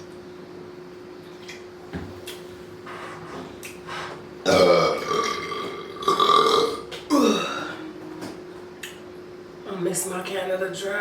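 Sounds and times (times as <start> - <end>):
woman burping: 4.4 - 7.9.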